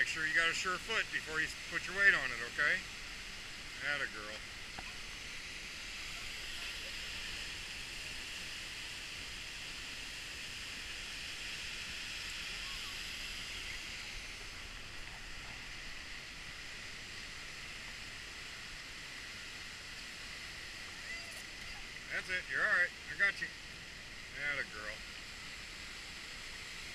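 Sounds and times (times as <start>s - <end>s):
waterfall roaring: 11.6s - 18.0s.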